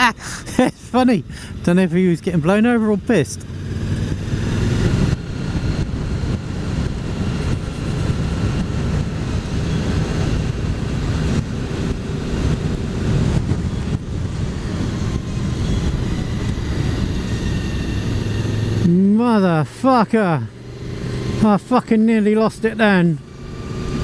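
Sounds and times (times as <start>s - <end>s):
motorcycle engine running: 2.4s - 24.0s
wind buffeting microphone: 3.4s - 18.9s.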